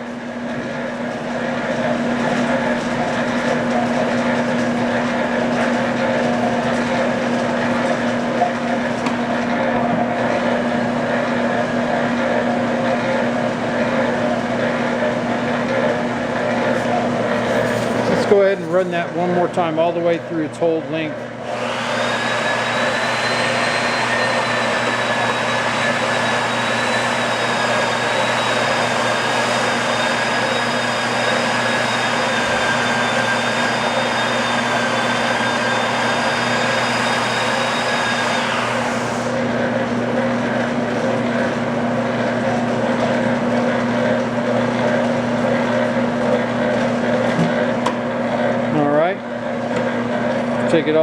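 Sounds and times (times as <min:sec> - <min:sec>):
mixer motor and gear hum: 0:00.0 - 0:51.0.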